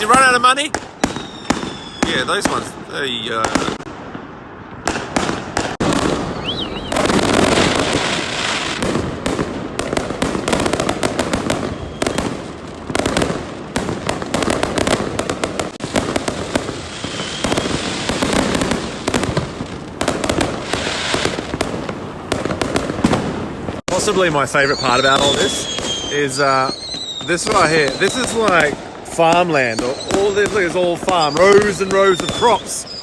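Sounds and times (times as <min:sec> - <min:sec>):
fireworks crackling and banging: 0:00.0 - 0:33.0
firework whistle: 0:00.9 - 0:02.7, 0:05.6 - 0:08.8, 0:11.5 - 0:12.6, 0:16.8 - 0:19.0, 0:20.3 - 0:22.0, 0:24.4 - 0:28.6, 0:29.2 - 0:33.0.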